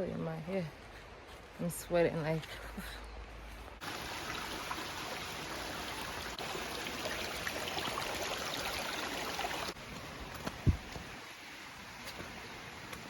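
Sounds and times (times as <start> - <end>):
stream water rushing: 3.2 - 13.0.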